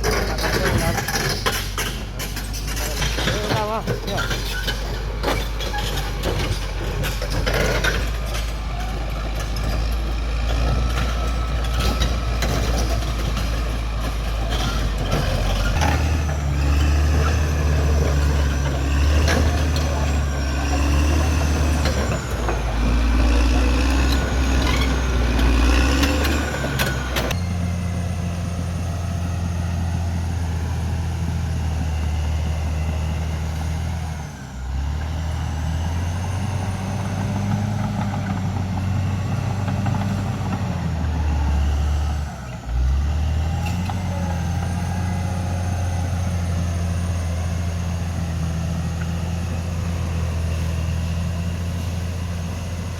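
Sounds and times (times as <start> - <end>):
sharp metal knocks and clanks: 0.0 - 8.6
bulldozer diesel engine: 0.0 - 52.9.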